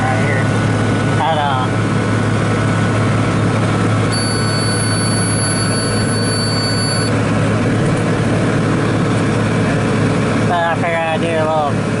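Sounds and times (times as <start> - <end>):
diesel tractor engine running: 0.0 - 12.0
thin high whine: 4.1 - 7.2.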